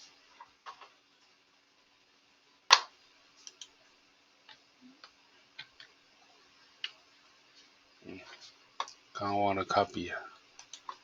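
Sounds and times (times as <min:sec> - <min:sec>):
computer mouse clicks: 0:03.4 - 0:03.7, 0:10.6 - 0:11.0.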